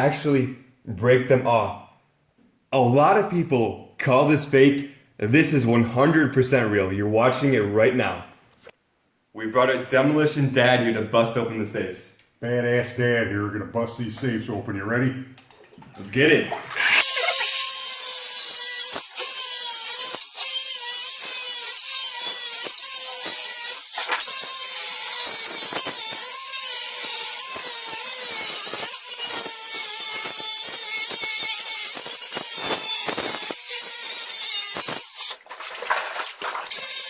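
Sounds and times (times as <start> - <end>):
angle grinder cutting metal: 16.8 - 35.4, 36.6 - 37.0.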